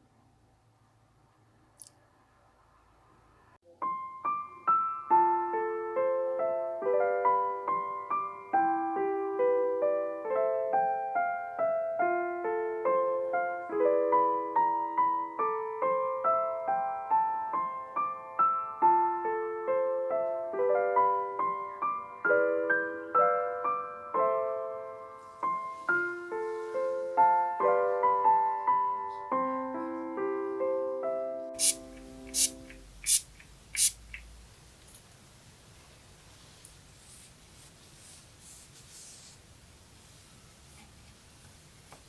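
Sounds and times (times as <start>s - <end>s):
gentle piano melody: 3.6s - 33.0s.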